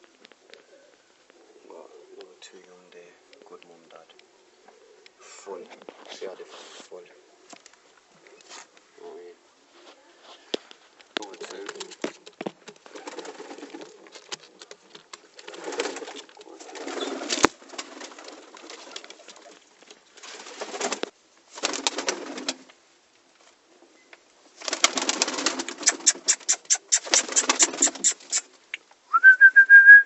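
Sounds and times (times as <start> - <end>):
pigeons cooing: 0.0 - 2.4, 4.2 - 5.3, 12.8 - 21.1, 24.8 - 28.6
rustling: 0.0 - 29.0
sharp clicks: 25.6 - 28.8.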